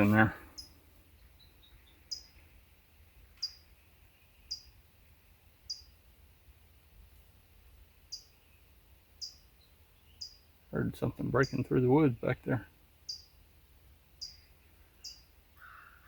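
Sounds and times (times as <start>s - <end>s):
small bird chip calls: 0.0s - 6.0s, 8.0s - 10.6s, 13.0s - 13.5s, 14.2s - 16.0s.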